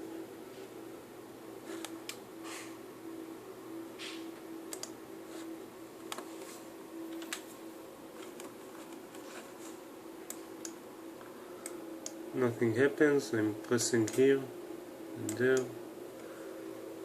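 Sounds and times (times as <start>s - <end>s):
steady low hum: 0.0s - 17.0s
computer clicks: 4.7s - 5.0s.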